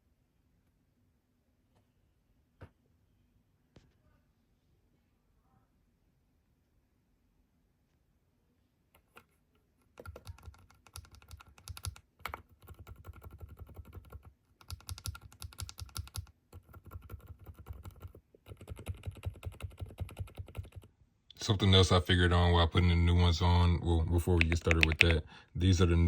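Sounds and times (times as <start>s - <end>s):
quiet keyboard keystrokes: 9.0s - 20.9s, 24.2s - 25.3s.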